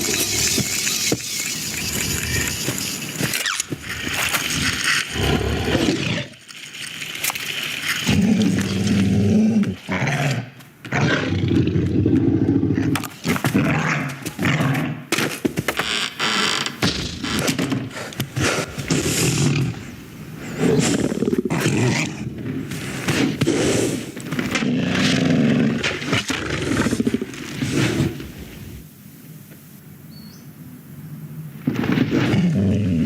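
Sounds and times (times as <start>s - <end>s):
animal growling: 4.0s - 6.4s, 8.0s - 15.1s, 18.4s - 28.1s, 31.7s - 33.0s.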